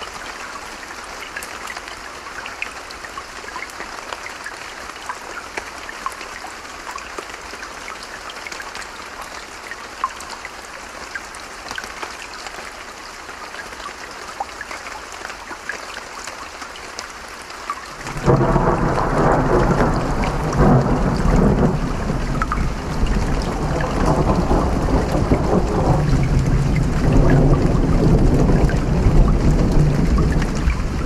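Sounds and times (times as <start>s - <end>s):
small drips and ticks: 0.0s - 31.0s
stream running: 0.0s - 31.0s
thunder rumbling: 18.0s - 31.0s.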